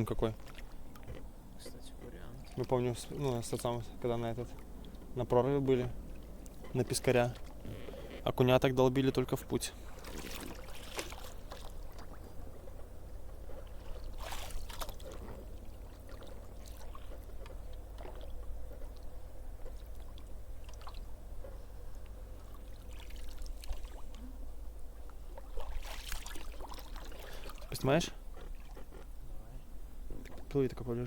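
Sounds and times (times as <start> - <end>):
oars pulling through water: 0.0 - 30.6
water splashes and drips: 2.3 - 3.8, 9.9 - 12.4, 13.5 - 24.3, 25.0 - 27.9.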